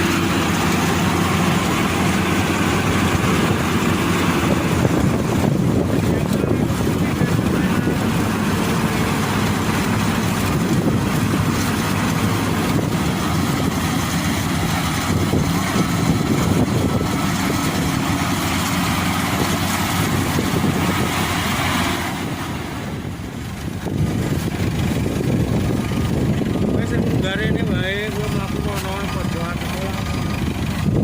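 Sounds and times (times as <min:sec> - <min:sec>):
combine harvester running: 0:00.0 - 0:31.0.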